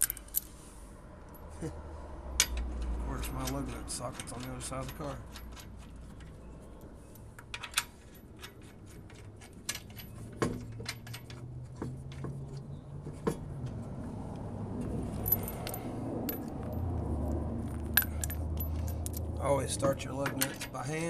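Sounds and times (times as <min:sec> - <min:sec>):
lug nuts clinking: 0:02.4 - 0:13.8, 0:14.8 - 0:16.9, 0:17.7 - 0:21.0.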